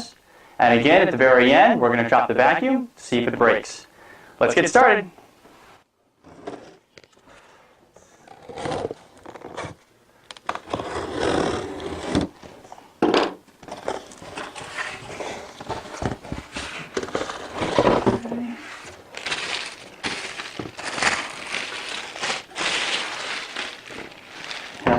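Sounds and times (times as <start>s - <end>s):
cardboard scraping and rustling: 8.3s - 9.8s, 13.6s - 24.9s.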